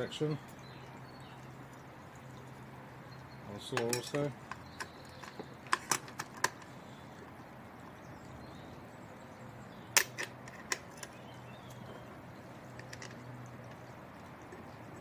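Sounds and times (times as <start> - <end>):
saw parts clicking and knocking: 3.7 - 6.8, 10.0 - 11.2, 12.7 - 13.8.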